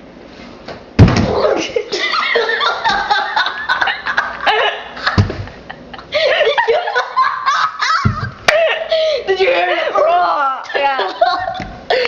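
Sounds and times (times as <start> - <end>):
young people laughing and giggling: 1.5 - 12.0
dull thumps: 5.1 - 5.6, 8.0 - 8.6.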